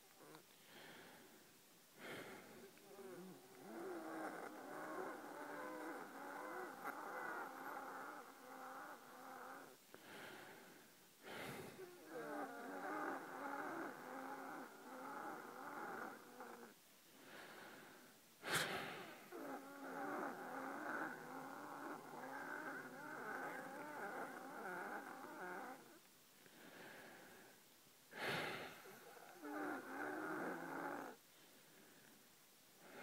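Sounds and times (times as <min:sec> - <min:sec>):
wheezing exhalations: 0:00.2 - 0:04.4, 0:17.1 - 0:19.5, 0:26.4 - 0:29.6
sharp inhalations: 0:00.5 - 0:02.8, 0:17.1 - 0:19.3, 0:26.4 - 0:28.9.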